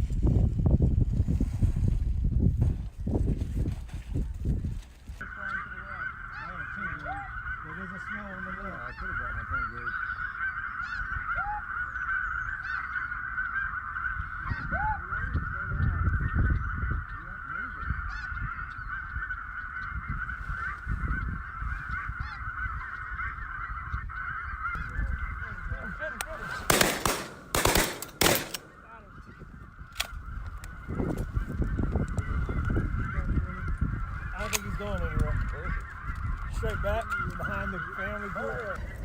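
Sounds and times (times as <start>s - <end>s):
wind rumbling on microphone: 0.0s - 7.6s, 8.6s - 39.0s
flock of geese calling: 5.2s - 39.0s
loud bursts: 26.6s - 28.9s.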